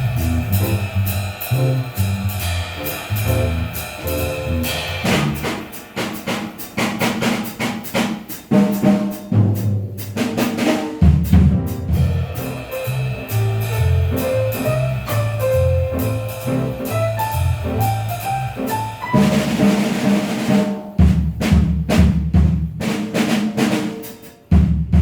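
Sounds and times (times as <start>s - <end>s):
jazz trio playing swing: 0.0s - 25.0s
snare and bass drum hits: 0.0s - 25.0s.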